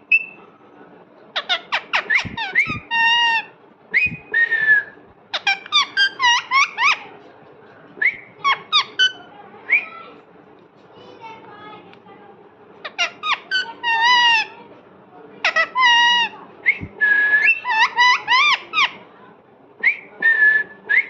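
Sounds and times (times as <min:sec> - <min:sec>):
parrot whistles and squeaks: 0:00.1 - 0:00.4, 0:01.4 - 0:07.0, 0:15.5 - 0:18.9.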